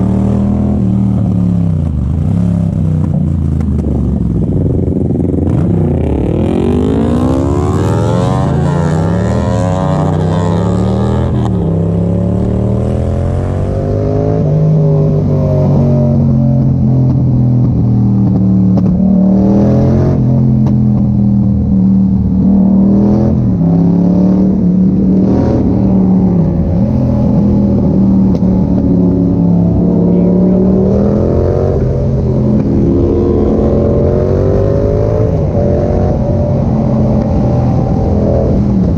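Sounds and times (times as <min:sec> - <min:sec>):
motorcycle engine accelerating: 0:00.0 - 0:38.9.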